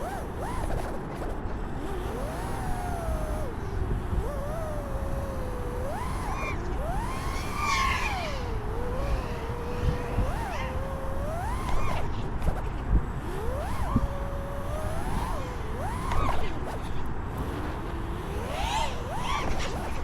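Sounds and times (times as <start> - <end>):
low wind rumble: 0.0 - 20.0
quadcopter motors whining: 0.0 - 20.0.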